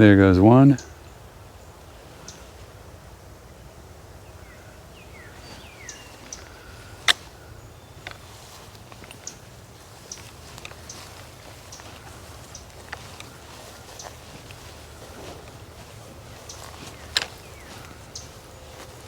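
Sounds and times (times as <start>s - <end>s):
small ticks: 2.2s - 2.5s, 5.8s - 7.4s, 8.0s - 19.0s.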